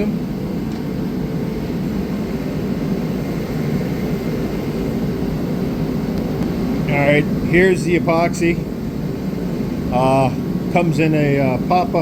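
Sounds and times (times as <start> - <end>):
heater humming with rushing air: 0.0 - 12.0.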